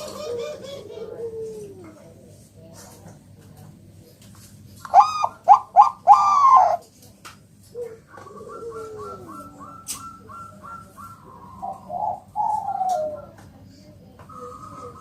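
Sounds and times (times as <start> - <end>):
dove cooing: 0.0 - 2.3, 4.9 - 6.8, 7.7 - 13.5, 14.2 - 15.0
dove singing clipped notes: 4.8 - 6.8, 7.7 - 15.0.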